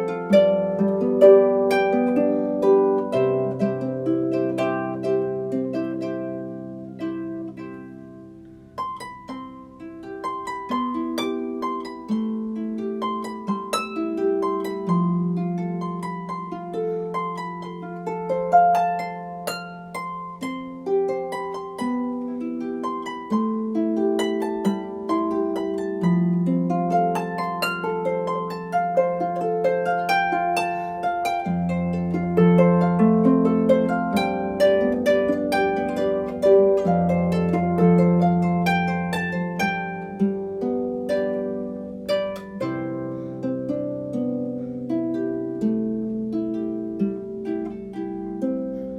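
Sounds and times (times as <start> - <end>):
solo harp music: 0.0 - 48.9.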